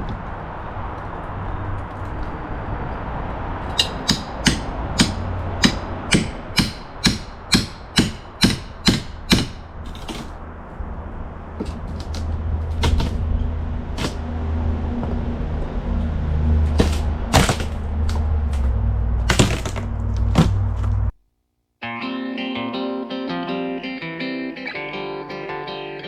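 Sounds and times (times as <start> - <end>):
hammer blows: 3.6 - 10.4.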